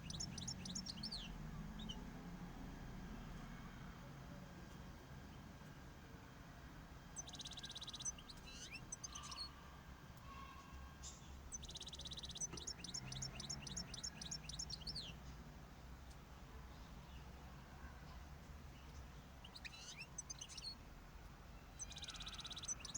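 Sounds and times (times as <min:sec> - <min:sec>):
small bird singing: 0:00.0 - 0:03.0, 0:07.0 - 0:09.6, 0:10.2 - 0:15.4, 0:18.7 - 0:22.9.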